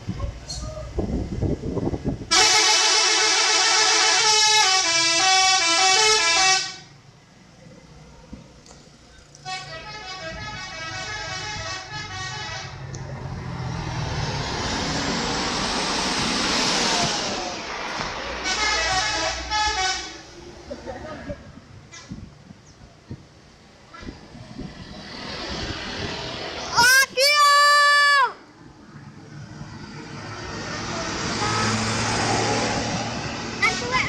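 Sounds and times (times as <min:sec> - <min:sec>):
bus musical horn tune: 0:02.3 - 0:06.9, 0:09.4 - 0:12.9, 0:18.4 - 0:20.3
vehicle passing by: 0:09.7 - 0:21.8, 0:24.0 - 0:34.0.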